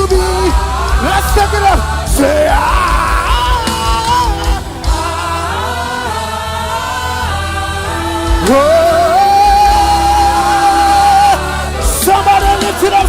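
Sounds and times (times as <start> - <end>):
gospel singers over a band: 0.0 - 13.0.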